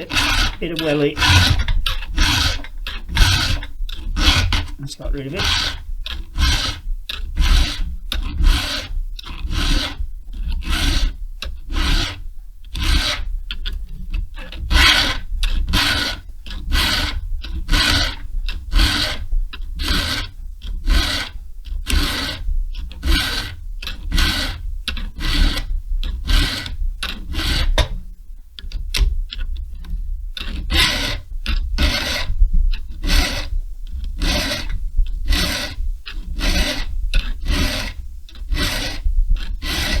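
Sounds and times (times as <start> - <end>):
file rasping on saw chain: 0.0 - 28.0, 28.6 - 40.0.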